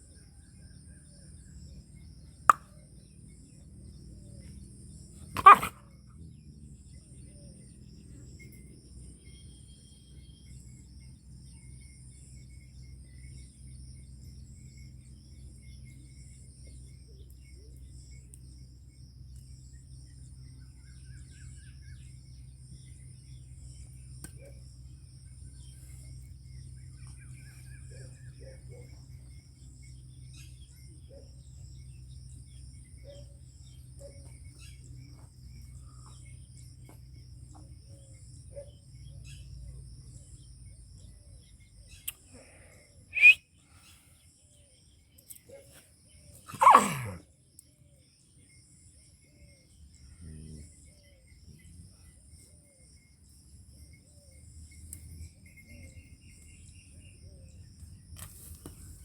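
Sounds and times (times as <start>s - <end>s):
high insect chirping: 1.3s - 5.8s, 6.4s - 59.0s
small bird calls: 5.2s - 5.8s, 20.2s - 59.0s
loud animal cries: 5.4s - 5.7s, 46.5s - 47.2s.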